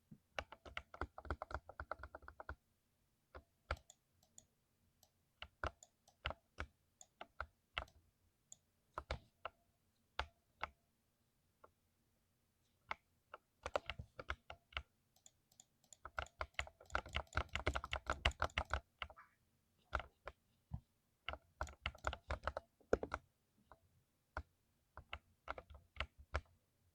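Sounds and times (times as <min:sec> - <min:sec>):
mechanical keyboard typing: 0:00.4 - 0:02.6, 0:13.6 - 0:19.1, 0:21.3 - 0:23.2.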